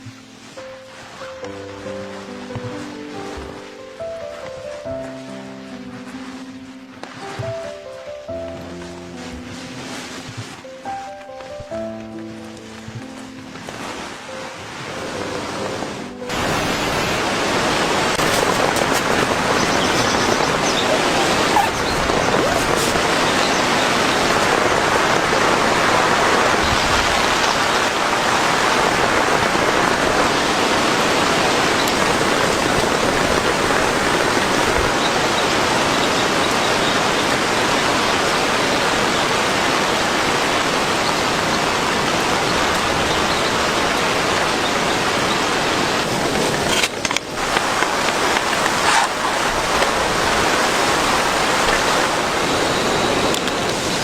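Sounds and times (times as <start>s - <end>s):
heavy rain pouring: 0.0s - 54.0s.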